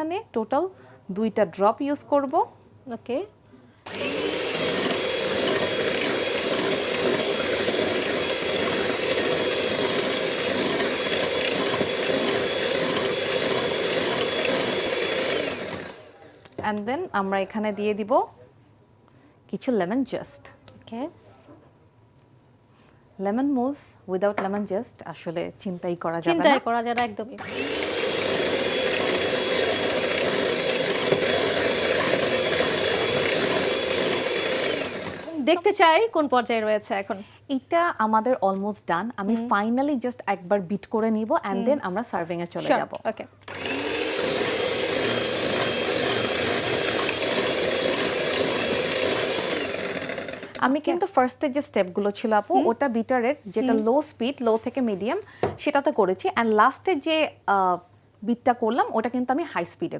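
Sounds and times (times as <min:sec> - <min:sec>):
electric hand mixer running: 0:03.9 - 0:16.2, 0:27.4 - 0:35.5, 0:43.4 - 0:50.7.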